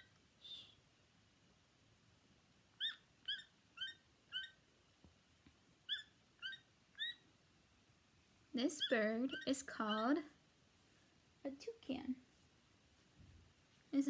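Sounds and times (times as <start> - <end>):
toucan calls: 0.0 - 0.8, 2.8 - 4.6, 5.8 - 7.3, 8.6 - 10.2.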